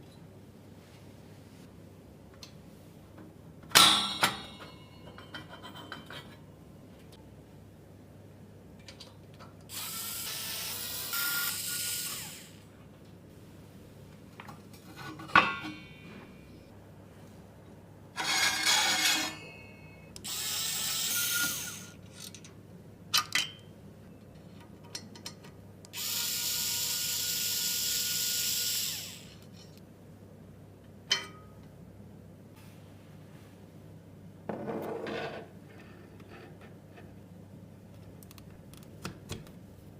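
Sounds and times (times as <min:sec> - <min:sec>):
small power tool motor: 0:09.7 - 0:12.6, 0:20.2 - 0:22.0, 0:26.0 - 0:29.4
clicks and knocks of parts: 0:22.0 - 0:23.6, 0:24.4 - 0:25.6.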